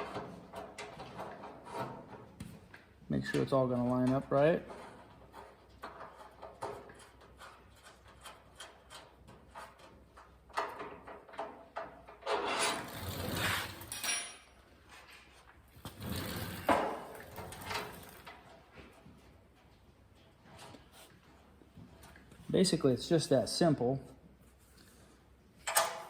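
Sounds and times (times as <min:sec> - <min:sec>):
metal scraping and sliding: 0:00.0 - 0:02.3, 0:03.2 - 0:18.7.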